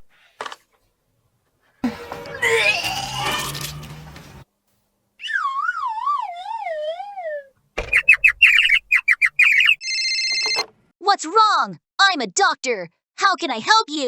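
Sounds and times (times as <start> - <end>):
electronic ring tone: 9.8 - 10.7.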